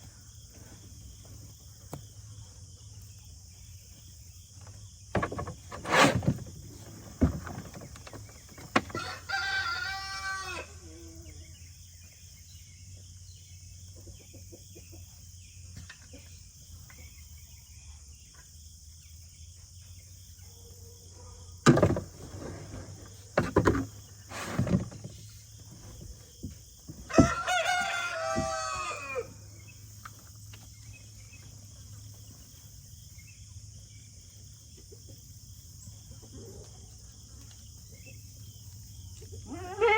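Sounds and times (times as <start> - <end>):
crickets chirring: 0.0 - 39.9
rooster crowing: 8.9 - 10.9, 27.1 - 29.4.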